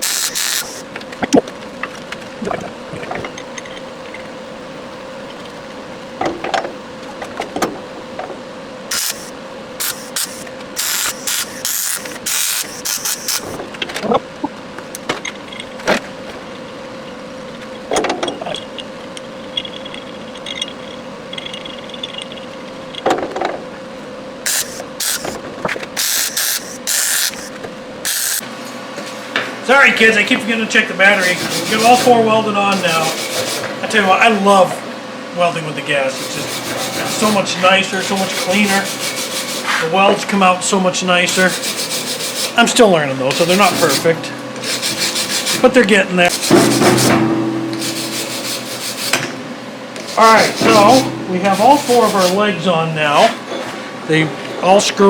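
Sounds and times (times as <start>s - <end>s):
welding arc crackling: 0.0s - 1.4s, 8.9s - 13.6s, 24.4s - 28.4s
steady hum: 0.0s - 17.7s, 23.9s - 53.2s.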